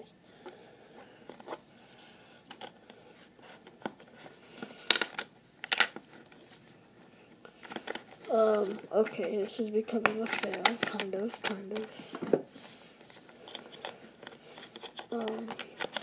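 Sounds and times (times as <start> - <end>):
plastic puzzle cube clicking: 13.5 - 16.0.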